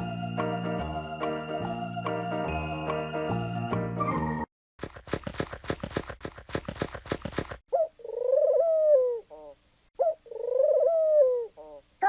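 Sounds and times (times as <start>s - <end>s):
pigeon cooing: 7.7s - 11.8s.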